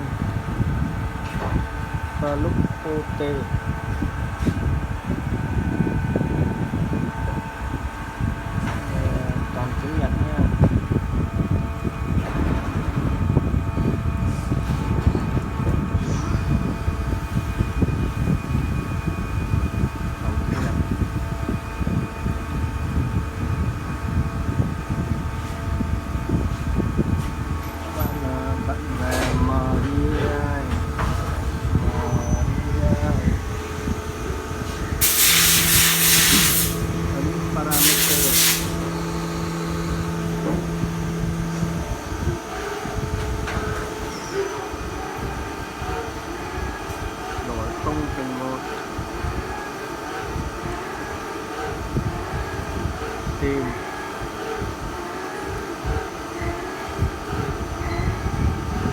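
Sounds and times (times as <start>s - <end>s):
machinery hum and rumble: 0.0s - 58.9s
steady whining tones: 15.4s - 58.9s
low uneven rumbling: 23.4s - 35.0s.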